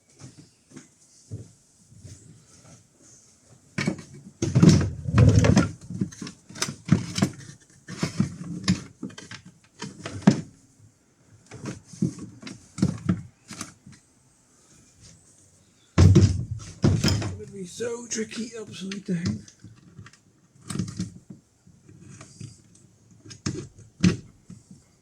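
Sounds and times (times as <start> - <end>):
knocks and rattles of parts: 3.8 - 10.5, 16.0 - 17.5.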